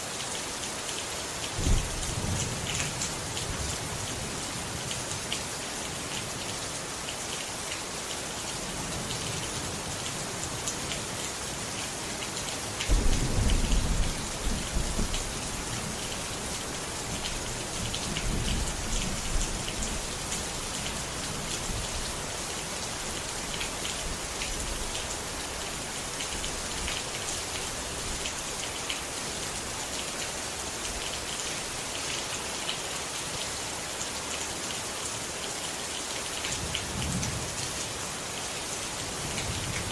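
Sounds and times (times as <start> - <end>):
heavy rain pattering: 0.2 - 39.9
thunder clap and rumble: 12.9 - 15.8.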